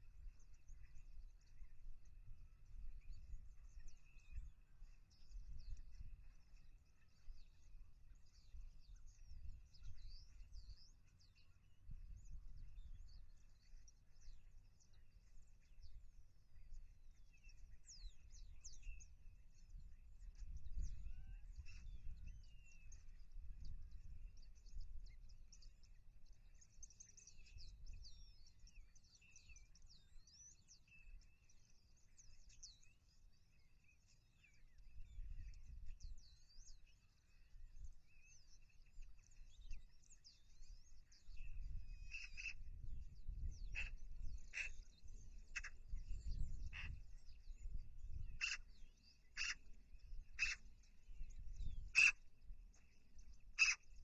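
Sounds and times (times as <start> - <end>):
small birds chirping: 0.0 - 54.0
low wind rumble: 41.3 - 48.5.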